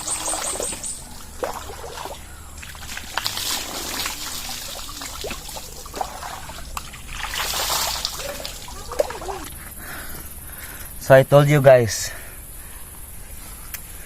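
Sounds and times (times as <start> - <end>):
small splashes and knocks: 0.0 - 9.6
water trickling and pouring: 0.0 - 9.7.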